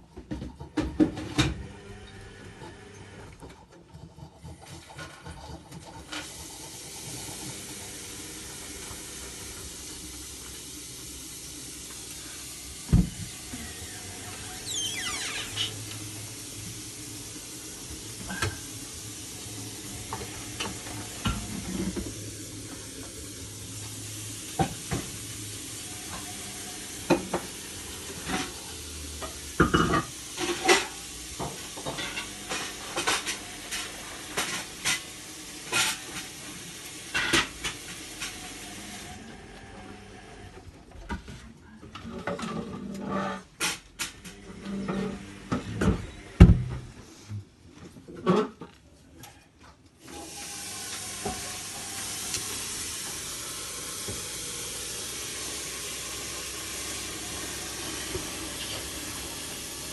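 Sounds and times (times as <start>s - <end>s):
washing machine motor hum: 0.0s - 3.7s, 4.6s - 41.4s, 44.2s - 47.1s, 50.0s - 59.9s.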